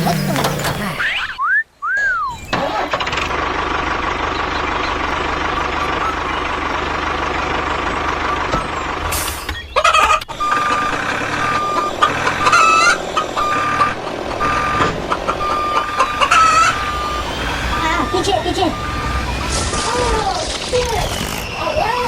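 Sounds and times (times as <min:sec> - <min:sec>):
small vehicle motor running: 0:00.0 - 0:01.0, 0:02.5 - 0:22.0
reversing beeps: 0:05.6 - 0:06.4, 0:07.4 - 0:20.3
crowing-like call: 0:12.1 - 0:18.1.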